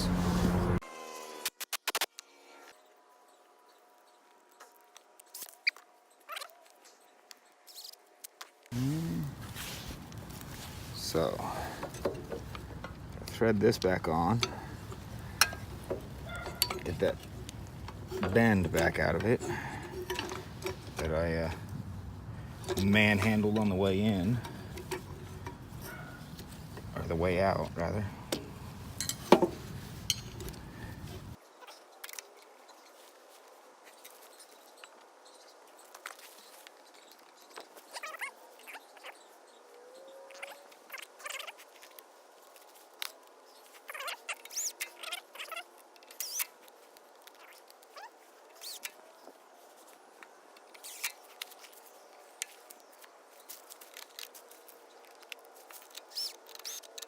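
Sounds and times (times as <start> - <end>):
small metal parts clicking: 14.3 - 21.7, 53.6 - 57.0
small metal and plastic parts clicking: 40.4 - 48.0, 49.8 - 57.0
faint short squeaks: 43.8 - 46.6, 47.4 - 49.0, 50.7 - 51.7, 55.8 - 57.0.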